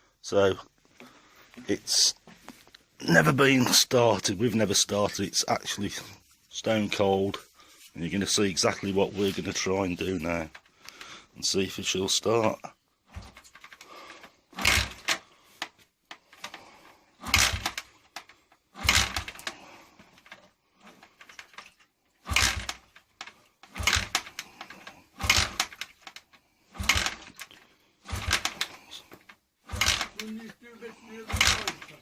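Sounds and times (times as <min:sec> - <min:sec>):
motorcycle engine kick-start clatter: 0:13.1 - 0:15.3, 0:16.2 - 0:30.5, 0:31.1 - 0:32.0.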